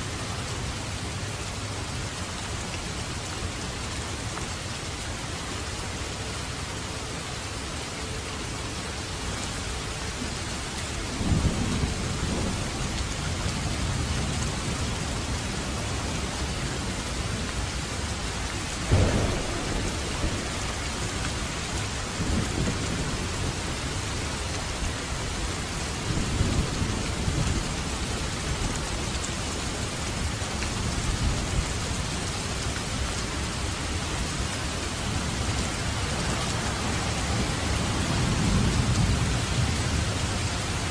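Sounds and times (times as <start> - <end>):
heavy rain: 0.0 - 40.9
thunder: 18.8 - 23.6.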